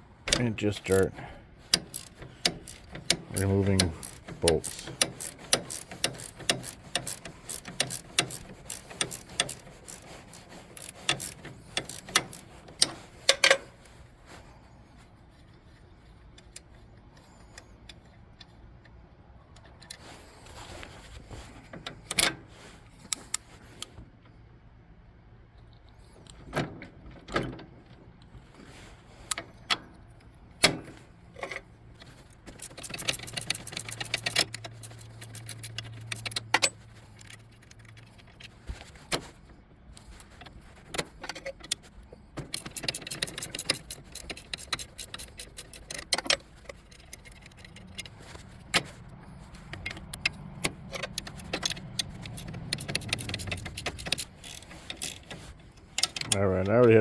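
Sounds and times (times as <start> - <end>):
metal tools clinking: 0.3 - 13.8, 32.5 - 38.5, 41.3 - 57.0
ratcheting wrench clicking: 1.7 - 13.6, 32.5 - 38.5, 41.3 - 57.0.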